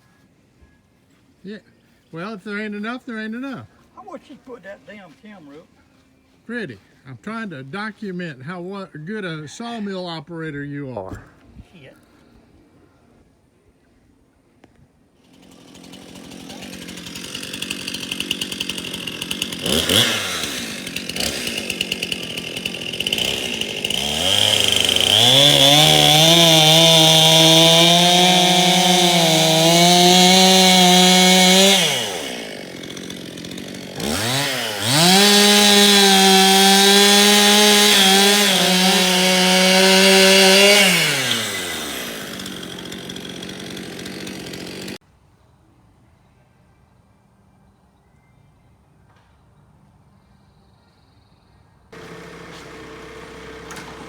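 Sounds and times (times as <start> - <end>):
small gasoline engine revving: 15.4 - 45.0, 52.0 - 54.0.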